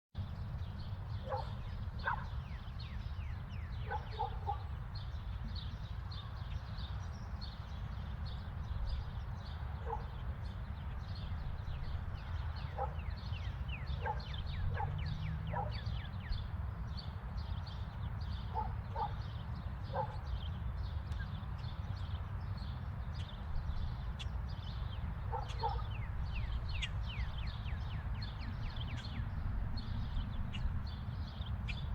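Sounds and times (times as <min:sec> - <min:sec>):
small birds chirping: 0:00.2 - 0:31.9
dog barking: 0:01.2 - 0:02.4, 0:03.8 - 0:04.7, 0:09.8 - 0:10.2, 0:12.8 - 0:13.1, 0:14.0 - 0:15.8, 0:18.5 - 0:19.2, 0:19.9 - 0:20.2, 0:25.3 - 0:26.0.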